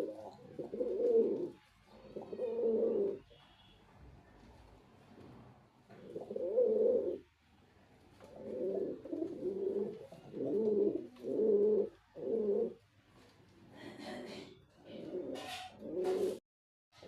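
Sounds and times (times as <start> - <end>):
pigeon cooing: 0.0 - 3.4, 6.0 - 7.3, 8.2 - 12.8, 14.8 - 16.4.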